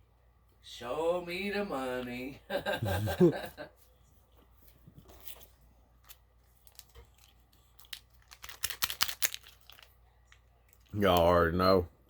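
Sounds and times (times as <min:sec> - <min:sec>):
packaging crinkling: 0:06.0 - 0:11.3.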